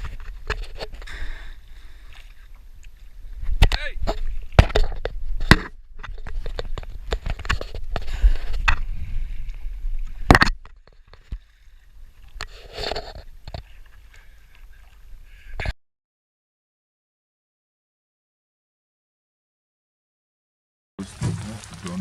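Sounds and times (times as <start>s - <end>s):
water sloshing around a canoe: 0.0s - 15.6s, 21.0s - 22.0s
wind rumbling on microphone: 3.2s - 10.6s.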